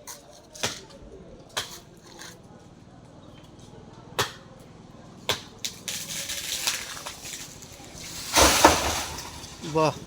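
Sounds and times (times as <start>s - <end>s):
sharp knocks: 8.3s - 9.6s.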